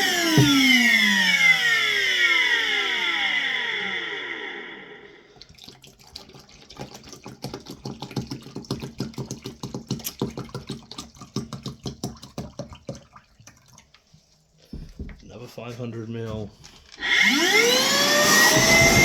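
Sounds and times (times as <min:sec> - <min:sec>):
vacuum motor winding down: 0:00.0 - 0:05.3, 0:17.0 - 0:19.0
water glugging and splashing: 0:05.3 - 0:15.3.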